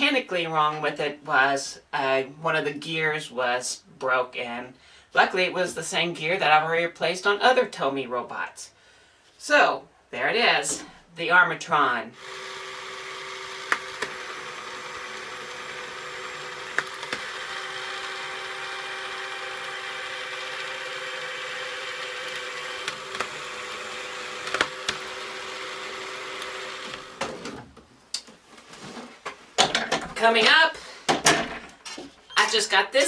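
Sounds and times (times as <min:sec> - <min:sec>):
toy robot arm motor whirring: 0:12.2 - 0:27.2.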